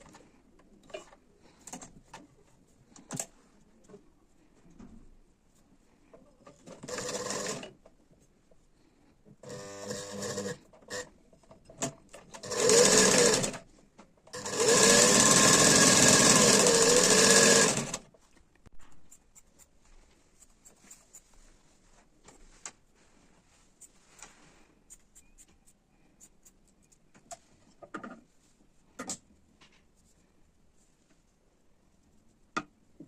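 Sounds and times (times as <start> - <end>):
sewing machine running: 6.7 - 7.7, 9.4 - 11.1, 12.3 - 13.6, 14.3 - 18.0.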